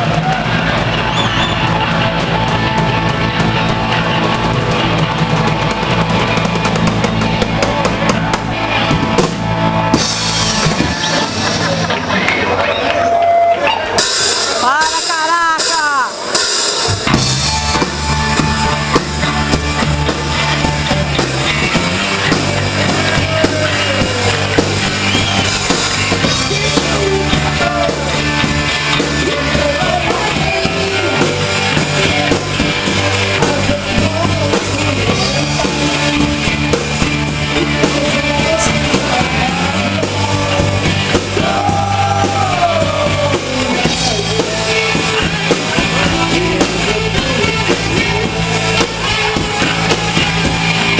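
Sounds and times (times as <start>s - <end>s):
bass notes: 0.0s - 50.9s
drum kit: 0.0s - 50.9s
person singing: 14.3s - 50.9s.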